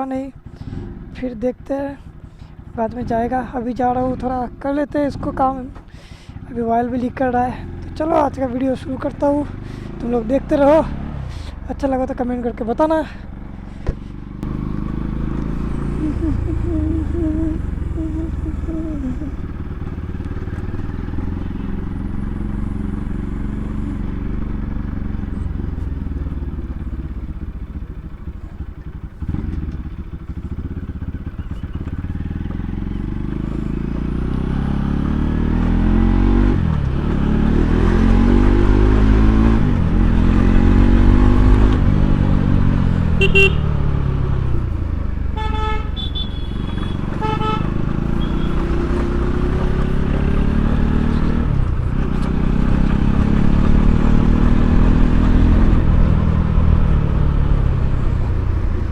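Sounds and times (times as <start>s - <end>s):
motorcycle engine revving: 0.0s - 58.9s
horn honking: 14.4s - 25.1s, 43.1s - 44.0s, 45.2s - 49.0s.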